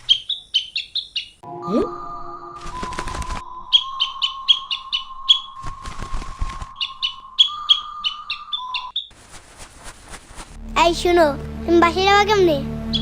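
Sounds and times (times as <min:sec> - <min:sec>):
small bird chirping: 0:00.0 - 0:01.4, 0:03.4 - 0:09.2
rustling noise: 0:02.6 - 0:03.4, 0:05.4 - 0:07.2, 0:09.0 - 0:10.8.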